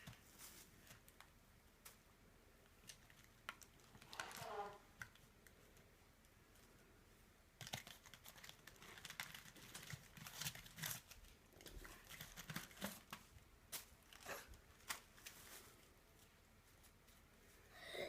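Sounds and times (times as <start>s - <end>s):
packaging crinkling and tearing: 2.8s - 5.3s, 7.6s - 15.8s.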